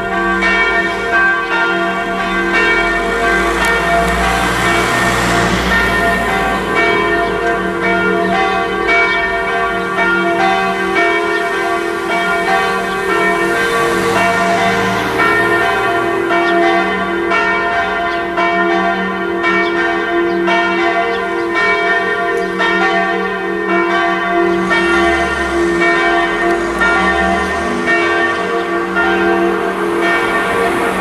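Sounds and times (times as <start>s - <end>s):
church bells pealing: 0.0s - 31.0s.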